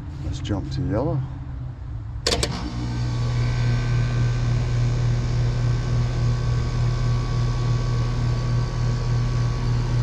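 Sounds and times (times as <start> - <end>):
compressor and fan humming: 2.2 - 10.0
contactor clicks: 2.3 - 2.7.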